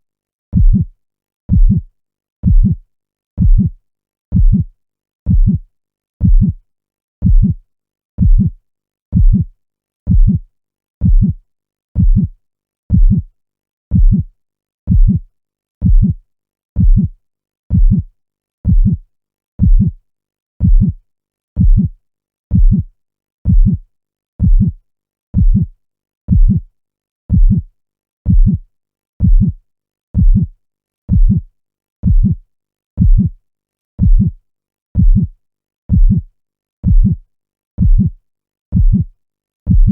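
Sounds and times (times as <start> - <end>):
heartbeat thumps: 0.6 - 0.9, 1.5 - 1.8, 2.4 - 2.8, 3.4 - 3.7, 4.3 - 4.7, 5.3 - 5.6, 6.2 - 6.6, 7.2 - 7.6, 8.2 - 8.5, 9.2 - 9.5, 10.1 - 10.4, 11.0 - 11.4, 12.0 - 12.3, 12.9 - 13.2, 13.9 - 14.3, 14.9 - 15.2, 15.8 - 16.2, 16.8 - 17.1, 17.7 - 18.1, 18.7 - 19.0, 19.6 - 20.0, 20.6 - 21.0, 21.6 - 21.9, 22.5 - 22.9, 23.5 - 23.8, 24.4 - 24.8, 25.4 - 25.7, 26.3 - 26.6, 27.3 - 27.6, 28.3 - 28.6, 29.2 - 29.6, 30.2 - 30.5, 31.1 - 31.4, 32.0 - 32.4, 33.0 - 33.3, 34.0 - 34.4, 35.0 - 35.3, 35.9 - 36.2, 36.8 - 37.2, 37.8 - 38.1, 38.7 - 39.1, 39.7 - 39.9.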